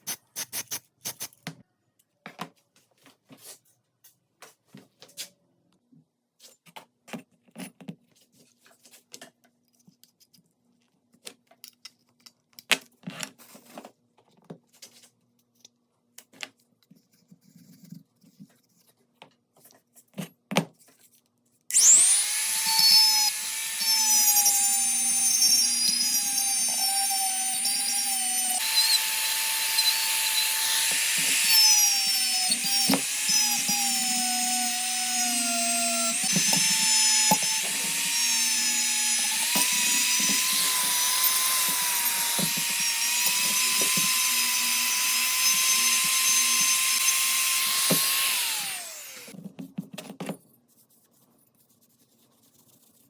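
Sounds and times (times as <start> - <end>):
electric power tool whining: 21.7 - 49.4.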